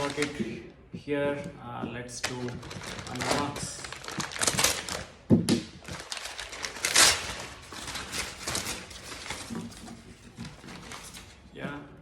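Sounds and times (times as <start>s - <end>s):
packaging rustling scrape: 0.0s - 0.5s, 2.2s - 11.6s.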